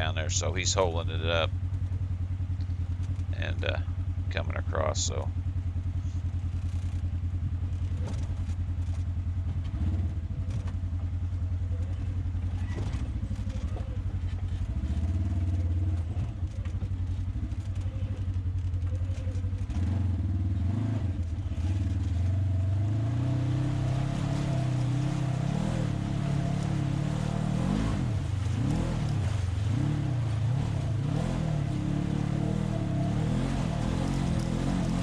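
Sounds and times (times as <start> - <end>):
off-road vehicle engine: 0.0 - 35.0
vehicle clatter: 0.0 - 35.0.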